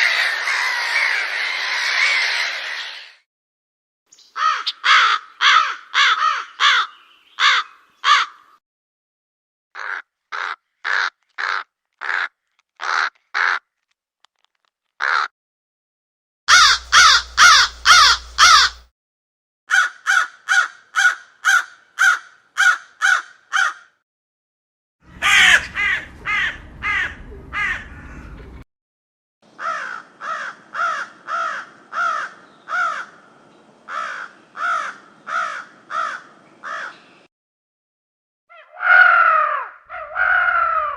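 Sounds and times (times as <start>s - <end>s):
crows cawing: 0.0s - 2.6s, 4.4s - 8.6s, 9.8s - 13.7s, 15.0s - 15.3s, 16.5s - 18.8s, 19.7s - 24.0s, 25.2s - 28.2s, 29.5s - 33.3s, 33.9s - 37.0s, 38.5s - 40.9s.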